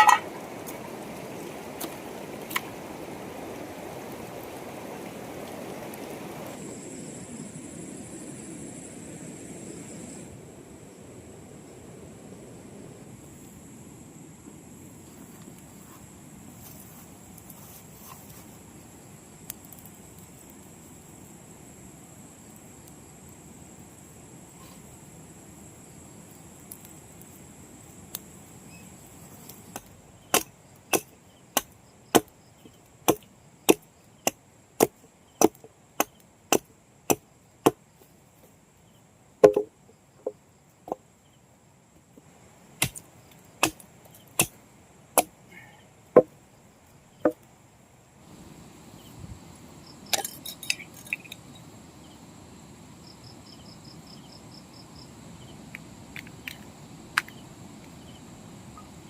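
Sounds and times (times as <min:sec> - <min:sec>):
insects buzzing: 0:12.5 - 0:59.0
blade chopping wood: 0:29.7 - 0:32.3, 0:33.1 - 0:37.8, 0:39.4 - 0:39.7, 0:42.8 - 0:43.0, 0:43.6 - 0:43.8, 0:44.4 - 0:44.6.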